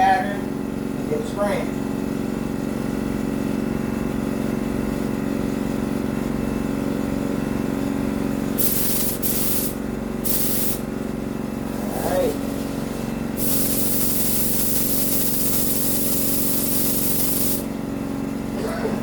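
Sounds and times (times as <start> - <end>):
motor hum: 5.6 - 19.0
spray gun hissing: 8.6 - 10.9, 13.4 - 17.7.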